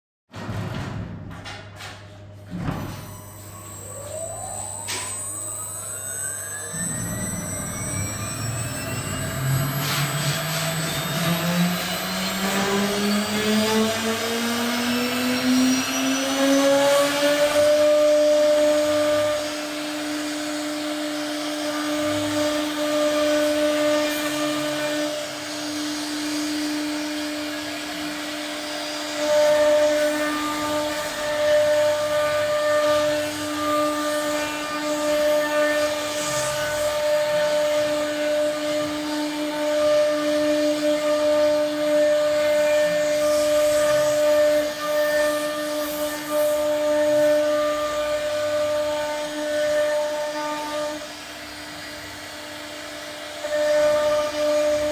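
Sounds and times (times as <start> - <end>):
router spindle whine: 2.8 - 54.9
rushing noise: 3.8 - 10.9.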